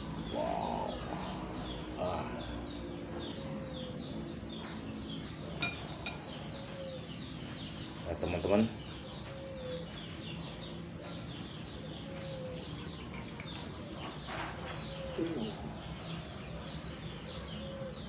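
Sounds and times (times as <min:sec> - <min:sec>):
dove cooing: 0:00.0 - 0:02.4, 0:09.0 - 0:10.2, 0:11.6 - 0:13.0, 0:13.7 - 0:15.9, 0:17.1 - 0:18.0
birds chirping: 0:00.0 - 0:18.0.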